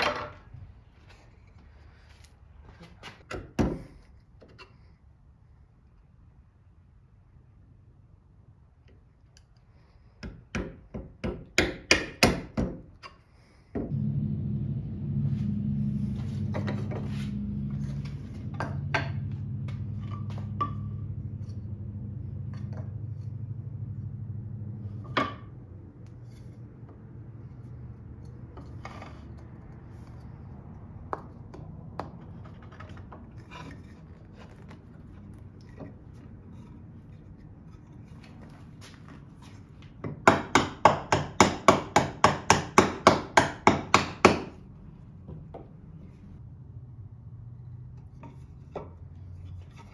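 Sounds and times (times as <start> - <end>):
machine hum: 13.9 - 26.0.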